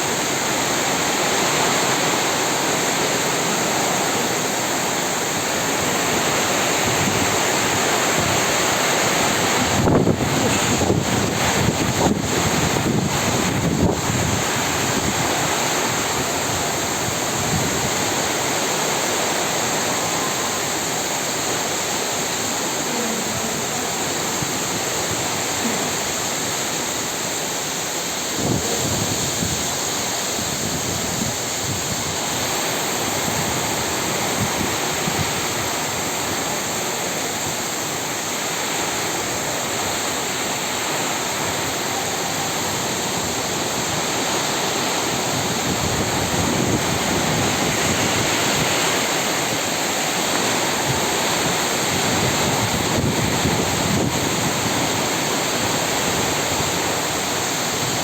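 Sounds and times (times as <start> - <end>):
heavy rain pouring: 0.0 - 58.0
wind buffeting microphone: 6.3 - 18.5, 28.2 - 36.6, 42.5 - 49.6, 50.3 - 58.0.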